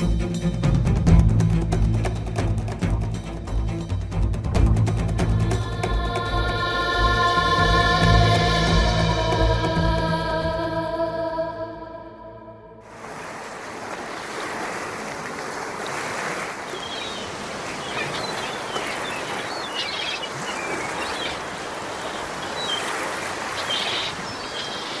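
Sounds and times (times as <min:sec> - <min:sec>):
rushing water: 0:12.8 - 0:25.0
birds chirping: 0:16.6 - 0:25.0.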